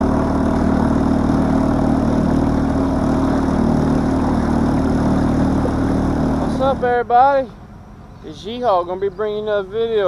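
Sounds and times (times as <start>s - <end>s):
engine running steadily: 0.0s - 10.0s.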